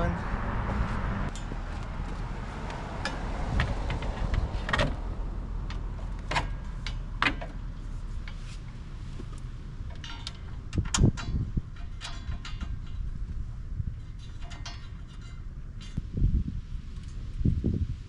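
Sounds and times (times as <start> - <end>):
metal clicks and clanks: 5.6 - 7.6, 9.3 - 13.4, 14.0 - 16.0.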